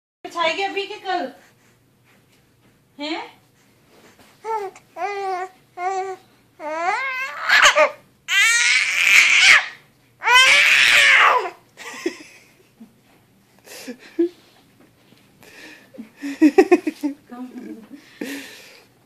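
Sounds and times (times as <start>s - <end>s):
baby laughing and squealing: 4.5s - 11.6s.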